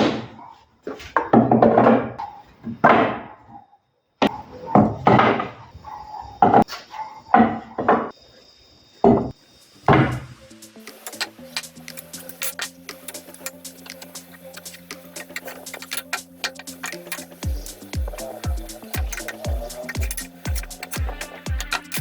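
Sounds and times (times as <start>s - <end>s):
knocks and bangs on wood: 4.8s - 5.6s.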